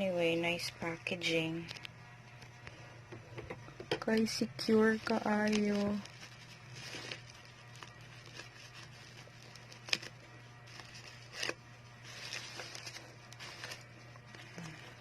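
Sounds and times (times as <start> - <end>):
steady low hum: 0.0 - 15.0
packaging clicks and crinkles: 4.0 - 15.0
packaging rustling: 4.1 - 15.0.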